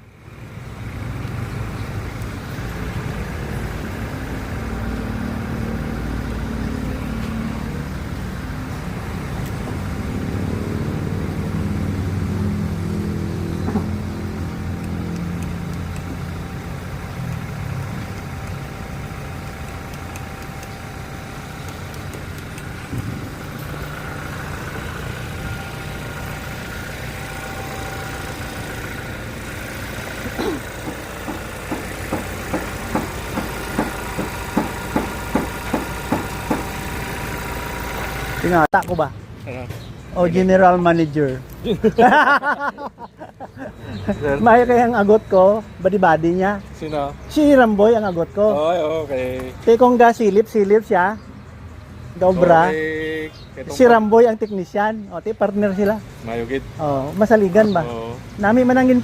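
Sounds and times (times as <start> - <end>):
car engine running: 0.0 - 39.0.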